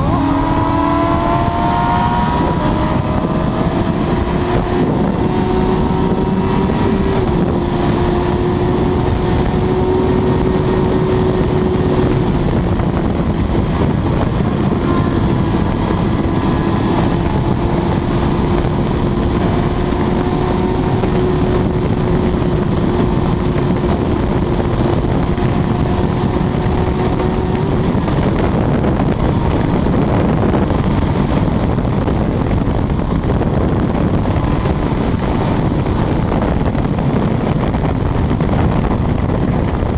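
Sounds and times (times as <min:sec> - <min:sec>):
heavy wind rush: 0:00.0 - 0:39.9
motorcycle engine at high revs: 0:00.0 - 0:39.9.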